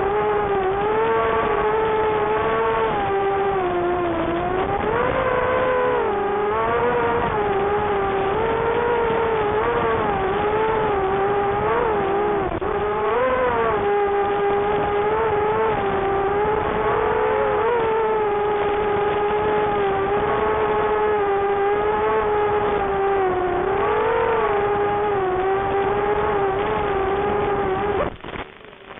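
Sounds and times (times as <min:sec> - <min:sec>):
quadcopter motors whining: 0:00.0 - 0:28.1.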